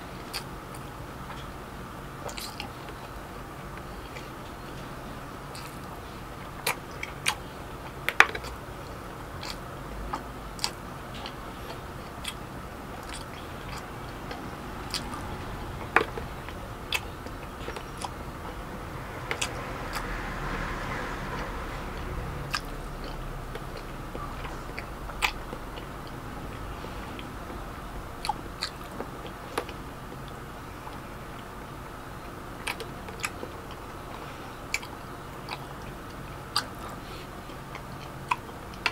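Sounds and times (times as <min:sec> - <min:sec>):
chewing and biting: 0:02.2 - 0:04.6, 0:05.5 - 0:31.6, 0:32.2 - 0:38.9.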